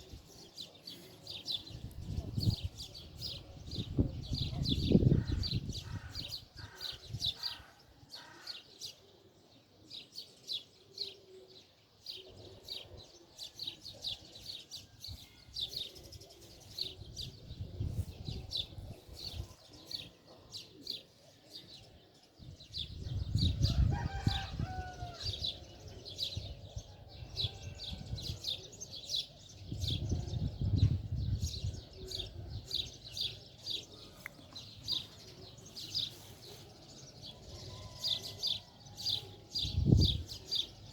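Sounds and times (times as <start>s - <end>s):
rooster crowing: 23.6s - 25.3s
small birds chirping: 28.7s - 40.9s.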